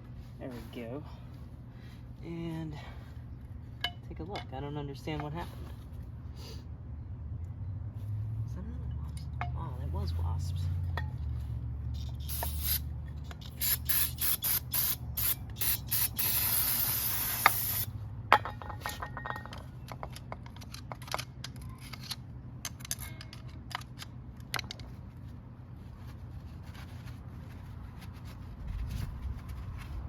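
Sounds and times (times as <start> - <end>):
spray hiss: 12.3 - 12.8, 13.6 - 17.9
metal parts clicking and knocking: 18.3 - 25.0.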